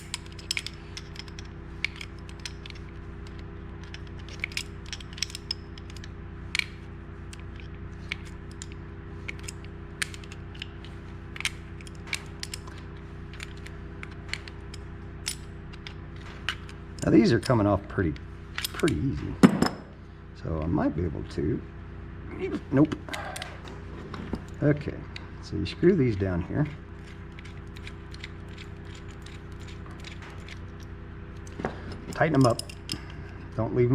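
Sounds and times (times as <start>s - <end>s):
hand tools clicking and tapping: 0.0s - 17.7s, 26.6s - 33.4s
steady low hum: 0.0s - 33.9s.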